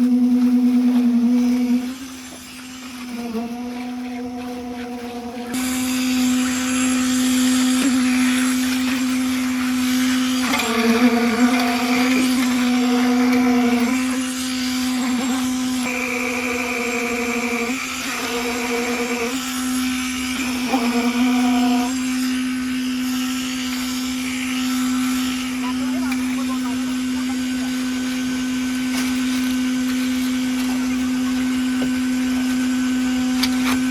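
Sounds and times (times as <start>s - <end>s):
motor high-pitched hum: 0.0s - 33.9s.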